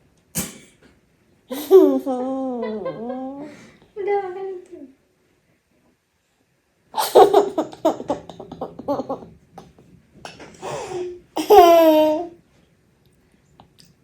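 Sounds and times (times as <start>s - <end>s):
child laughing loudly: 7.0s - 9.3s, 10.6s - 12.3s.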